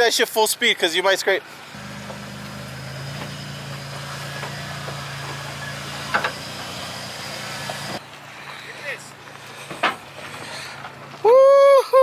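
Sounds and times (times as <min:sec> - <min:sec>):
truck engine running at low revs: 0:01.7 - 0:08.2.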